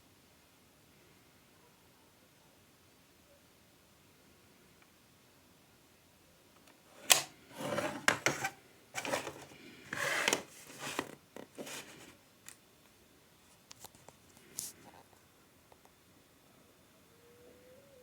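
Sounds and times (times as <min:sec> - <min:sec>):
packaging rubbing and scraping: 0:07.0 - 0:12.2.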